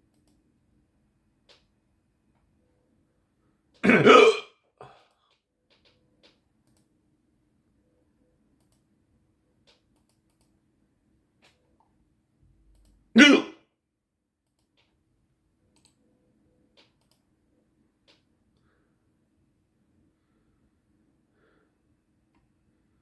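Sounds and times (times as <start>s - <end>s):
faint small clicks: 0.0s - 0.4s, 1.4s - 2.5s, 5.0s - 6.9s, 8.6s - 8.9s, 9.6s - 10.6s, 12.7s - 13.0s, 14.4s - 15.0s, 15.7s - 16.0s, 16.7s - 17.3s, 18.0s - 18.7s
person hiccuping: 3.8s - 4.5s, 13.2s - 13.6s.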